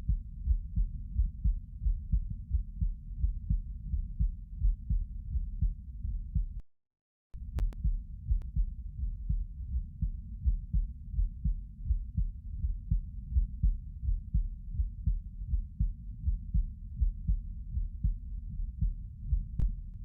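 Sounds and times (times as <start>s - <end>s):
heartbeat: 0.0s - 6.6s, 7.4s - 20.0s
faint clicks: 7.5s - 7.9s.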